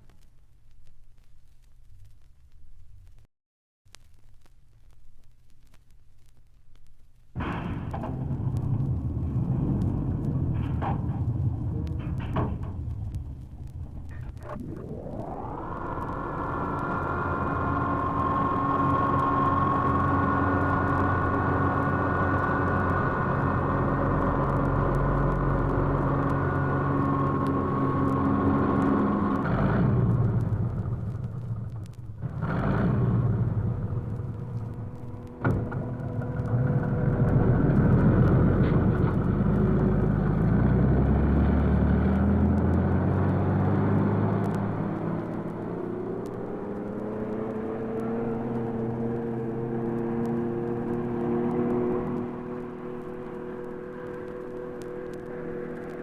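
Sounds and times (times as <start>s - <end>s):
dense hiss-like noise: 0.0s - 3.3s, 3.9s - 56.0s
faint steady tones: 0.0s - 3.3s, 3.9s - 40.6s, 42.6s - 56.0s.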